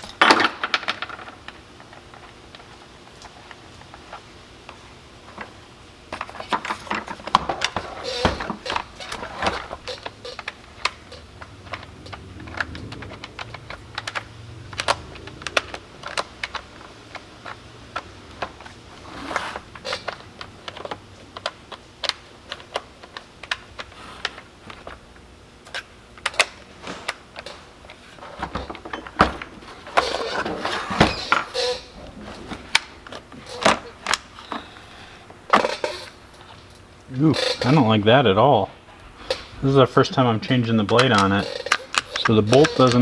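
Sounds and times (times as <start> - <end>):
hand tool clicks and knocks on metal: 40.5 - 43.0.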